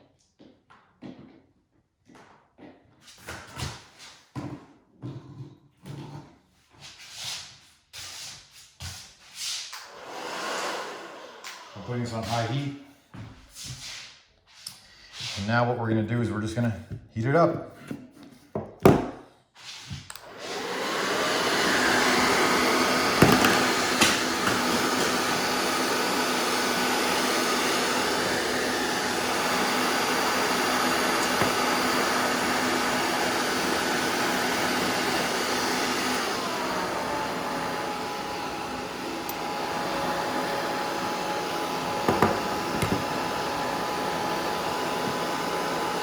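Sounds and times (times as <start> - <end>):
hair dryer running: 9.8 - 12.6, 20.1 - 46.0.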